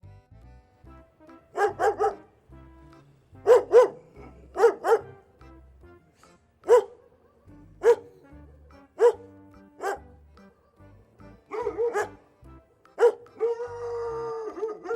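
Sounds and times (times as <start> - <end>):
quiet background music: 0.0 - 14.9
dog barking: 1.5 - 2.3, 3.4 - 5.2, 6.6 - 8.3, 9.0 - 10.2, 11.5 - 12.3, 13.0 - 14.9.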